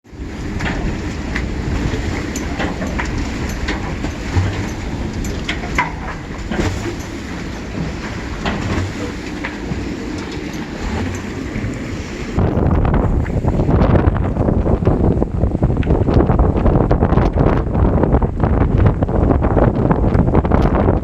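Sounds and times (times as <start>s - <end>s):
wind buffeting microphone: 0.0s - 21.0s
sharp clicks and knocks: 0.5s - 12.0s.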